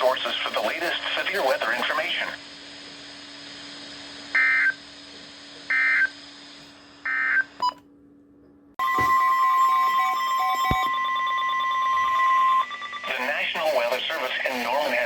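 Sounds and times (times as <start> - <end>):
warbling digital data tones: 9.2 - 14.7.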